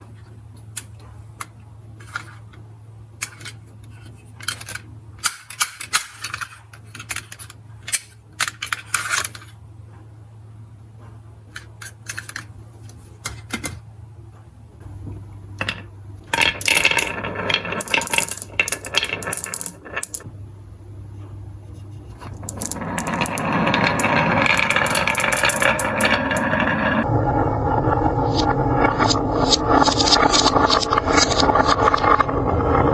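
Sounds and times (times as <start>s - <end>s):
marbles clicking and rolling: 15.6s - 20.3s, 22.1s - 27.1s, 28.3s - 32.3s.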